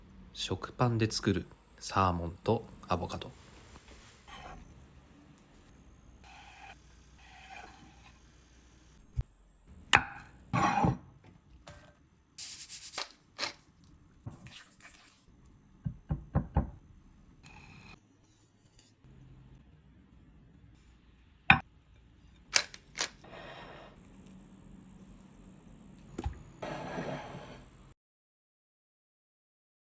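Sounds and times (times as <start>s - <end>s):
knife cutting on cutting board: 6.2s - 8.0s.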